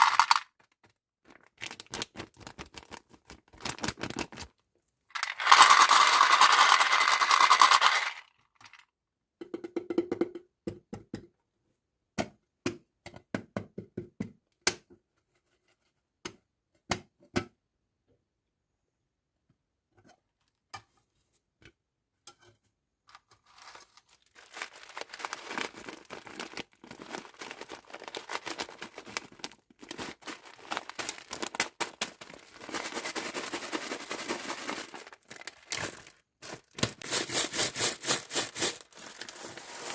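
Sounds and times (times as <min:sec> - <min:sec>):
packaging tearing: 0:01.3 - 0:04.5, 0:23.4 - 0:39.9
packaging crinkling: 0:01.3 - 0:04.6, 0:05.2 - 0:08.1, 0:23.4 - 0:39.9.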